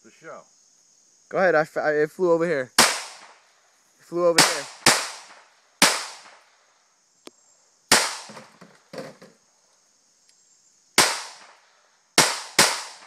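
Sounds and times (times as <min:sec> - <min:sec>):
pistol shots with echo: 0:02.8 - 0:03.3, 0:04.4 - 0:06.4, 0:11.0 - 0:11.5, 0:12.2 - 0:13.0
faint click: 0:07.2 - 0:07.4.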